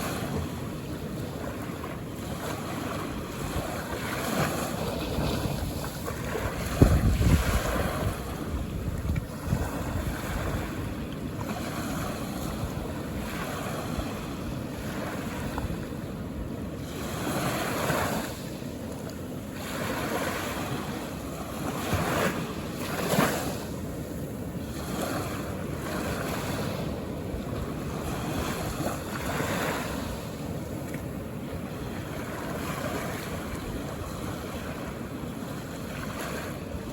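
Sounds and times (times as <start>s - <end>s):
ocean waves washing ashore: 0.0s - 36.9s.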